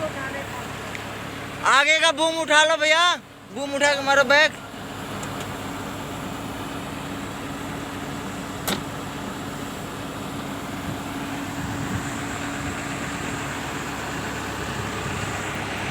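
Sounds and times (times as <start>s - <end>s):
excavator diesel engine humming: 0.0s - 15.9s
sharp click: 8.6s - 8.9s.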